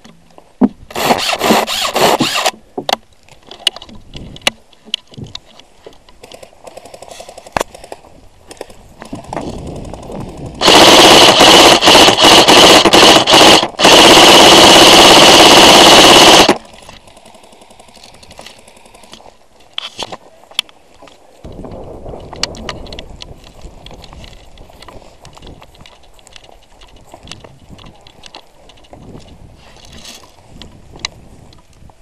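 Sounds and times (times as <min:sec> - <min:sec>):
airsoft gun firing bursts: 0:09.6 - 0:18.0.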